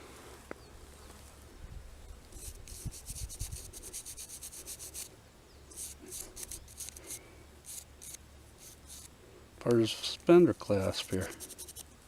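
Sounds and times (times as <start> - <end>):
scratchy rubbing of metal object: 2.3 - 5.1, 5.7 - 9.1, 10.8 - 11.9.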